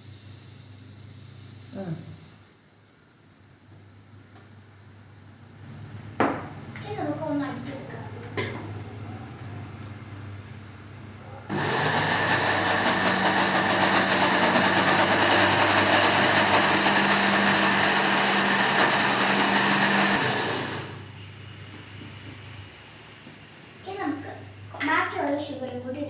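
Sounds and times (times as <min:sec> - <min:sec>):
electric mixer running: 0:11.5 - 0:21.2.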